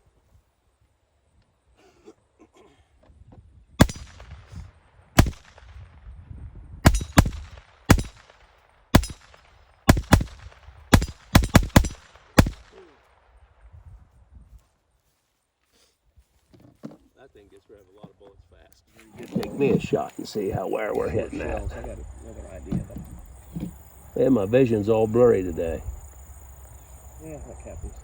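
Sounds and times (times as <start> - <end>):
handgun shots with echo: 6.8 - 8.3, 9.0 - 12.8.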